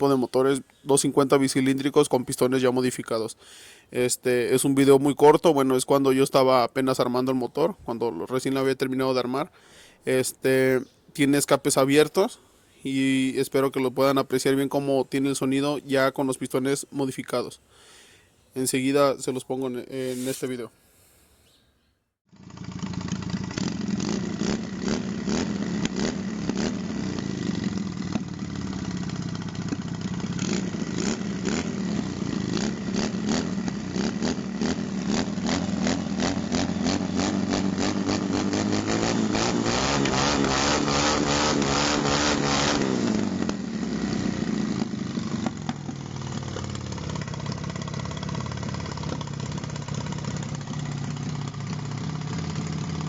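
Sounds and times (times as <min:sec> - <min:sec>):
motorcycle engine revving: 0:22.3 - 0:53.0.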